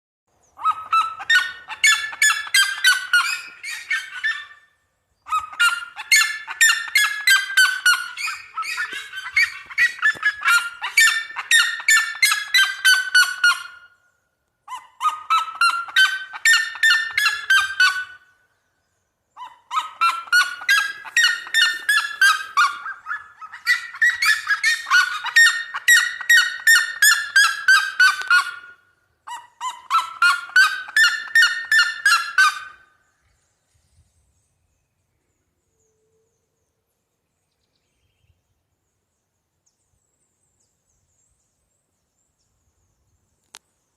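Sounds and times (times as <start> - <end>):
bird yelping calls: 0.4 - 14.0, 14.7 - 18.4, 19.4 - 32.9.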